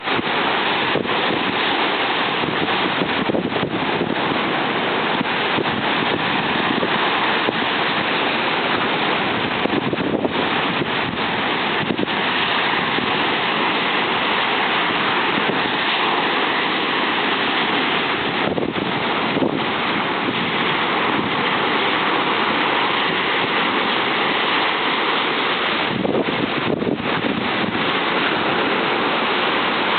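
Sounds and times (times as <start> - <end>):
breaking waves: 0.0 - 29.9
wind buffeting microphone: 2.3 - 14.2, 17.6 - 23.3, 25.6 - 29.9.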